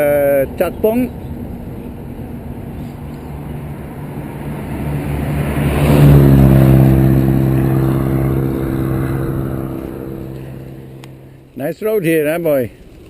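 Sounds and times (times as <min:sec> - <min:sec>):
vehicle passing by: 0:01.3 - 0:11.6.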